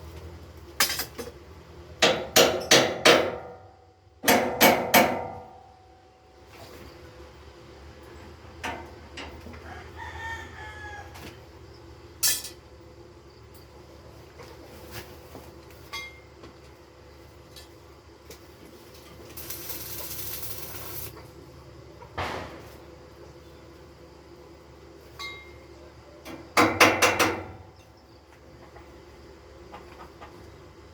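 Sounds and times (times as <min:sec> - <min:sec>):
building work knocks and taps: 0:02.0 - 0:03.5, 0:26.3 - 0:27.6
rooster crowing: 0:09.4 - 0:11.5
short hissing noise: 0:19.3 - 0:21.2.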